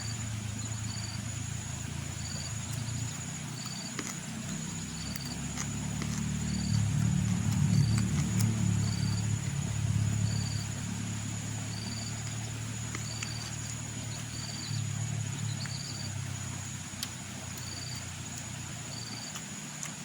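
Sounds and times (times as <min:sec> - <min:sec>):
high insect-like whine: 0:00.0 - 0:20.0
low rumble: 0:04.6 - 0:16.4.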